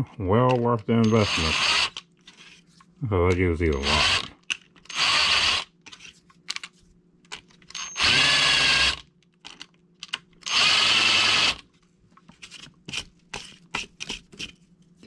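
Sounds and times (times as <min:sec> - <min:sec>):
power drill drilling into plastic: 0:01.1 - 0:02.0, 0:03.8 - 0:04.3, 0:04.9 - 0:05.6, 0:07.8 - 0:09.0, 0:10.4 - 0:11.6.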